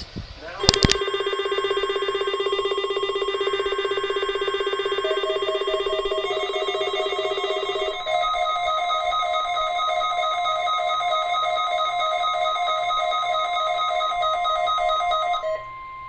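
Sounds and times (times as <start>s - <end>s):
weather radio alert beeping: 0.4s - 14.9s.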